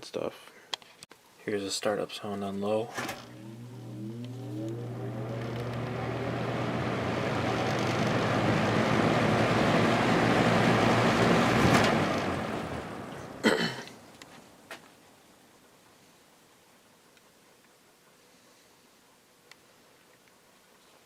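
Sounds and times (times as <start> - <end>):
box fan air rush: 3.0 - 13.8.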